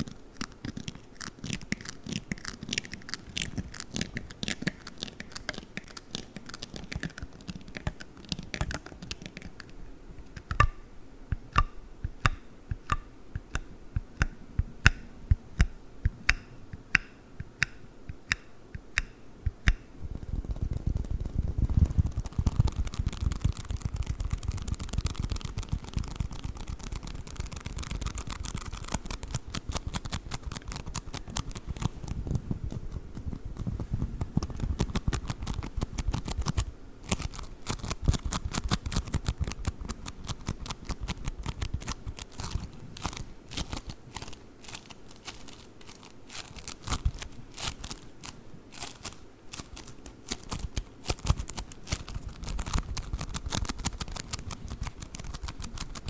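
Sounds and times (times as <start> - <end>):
foam squeezed crackling: 34.5 - 56.0.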